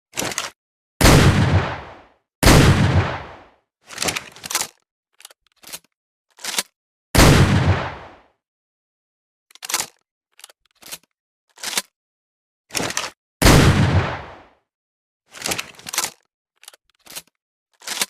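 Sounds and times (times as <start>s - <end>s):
shotgun shot: 1.0s - 3.5s, 7.2s - 8.2s, 13.4s - 14.5s.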